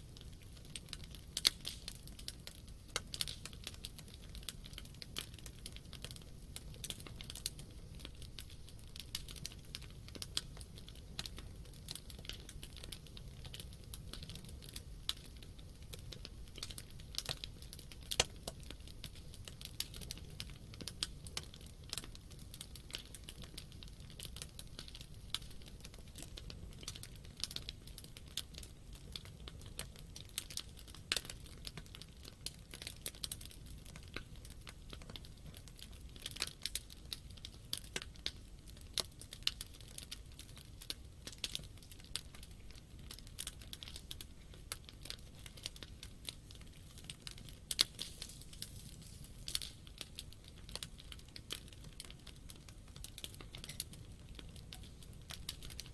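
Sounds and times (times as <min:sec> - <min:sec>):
campfire crackling and popping: 0:00.0 - 0:55.9
low rumble of burning fire: 0:00.0 - 0:55.9.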